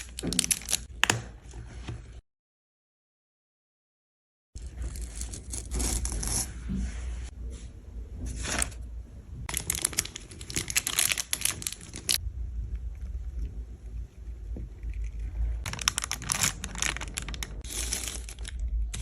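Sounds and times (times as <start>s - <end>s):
crinkling and tearing handling noises: 0.0s - 1.2s, 9.5s - 12.2s, 14.9s - 19.0s.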